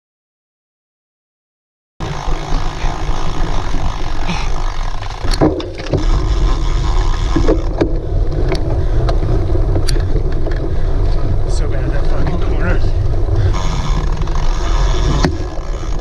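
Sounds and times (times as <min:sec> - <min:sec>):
bike rattling over rough ground: 0:02.0 - 0:16.0
wind buffeting microphone: 0:02.0 - 0:16.0.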